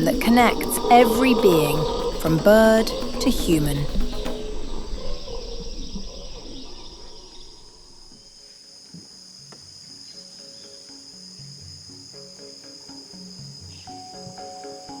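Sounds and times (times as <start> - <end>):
insects buzzing: 0.0 - 15.0
soft background music: 8.4 - 15.0.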